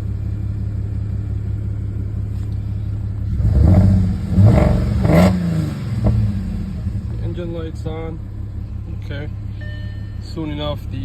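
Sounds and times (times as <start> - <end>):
misfiring car engine revving: 3.2 - 7.8.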